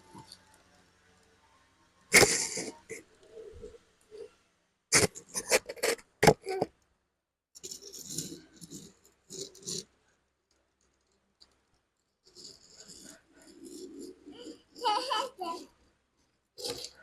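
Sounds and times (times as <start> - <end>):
toys rattling and scraping: 7.6 - 10.0, 12.2 - 15.8, 16.6 - 17.0
toys clicking and knocking: 16.6 - 17.0.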